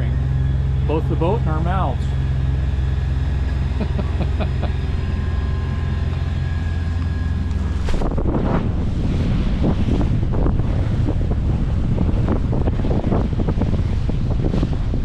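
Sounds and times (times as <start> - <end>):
diesel engine humming: 0.0 - 12.6
water rushing along hull: 0.0 - 15.0
wind buffeting microphone: 0.0 - 15.0.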